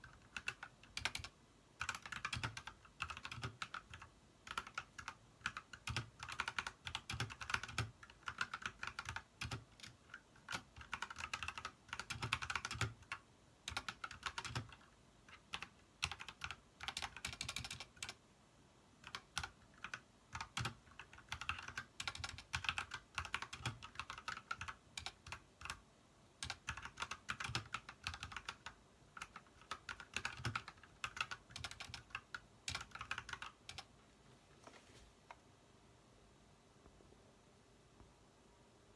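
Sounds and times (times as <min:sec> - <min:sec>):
mechanical keyboard typing: 0:00.0 - 0:18.2, 0:19.0 - 0:25.8, 0:26.4 - 0:33.9.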